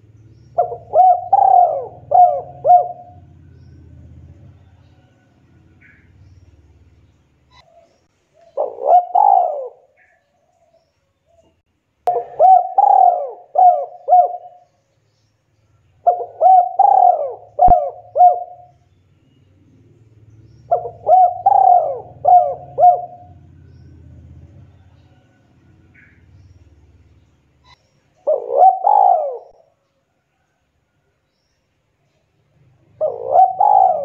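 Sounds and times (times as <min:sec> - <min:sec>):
dove cooing: 0:00.0 - 0:06.1, 0:07.5 - 0:10.3, 0:12.1 - 0:14.7, 0:16.0 - 0:18.8, 0:20.6 - 0:26.5, 0:27.6 - 0:29.8, 0:32.8 - 0:34.0.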